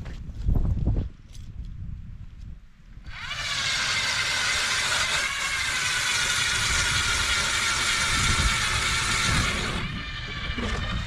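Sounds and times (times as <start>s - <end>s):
motor-driven machine whining: 3.1s - 11.0s.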